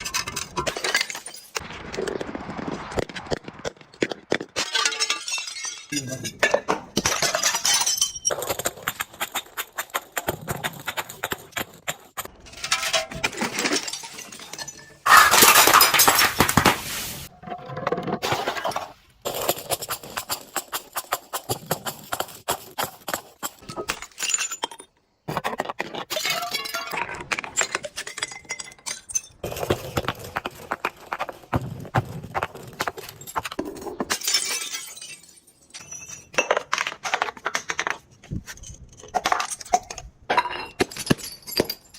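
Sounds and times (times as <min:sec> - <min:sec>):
glass shattering: 0:00.0 - 0:01.6, 0:04.6 - 0:09.0, 0:12.4 - 0:17.3, 0:26.1 - 0:29.6, 0:32.9 - 0:36.7, 0:39.1 - 0:41.9
glass bottles crunching: 0:00.0 - 0:01.7, 0:04.5 - 0:17.3, 0:18.2 - 0:24.9, 0:25.5 - 0:31.6, 0:32.3 - 0:37.0, 0:38.4 - 0:41.9.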